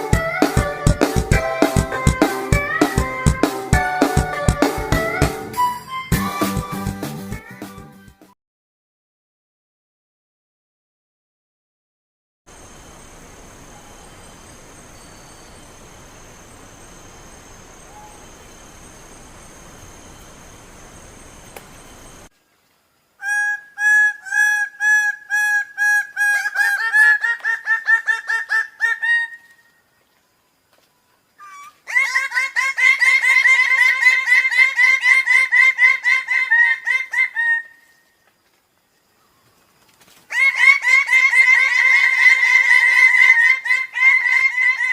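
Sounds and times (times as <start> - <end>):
thin high tone: 12.5 - 22.3
faint steady hiss: 12.5 - 35.9, 37.6 - 44.8
bird calling harsh notes: 12.6 - 22.3.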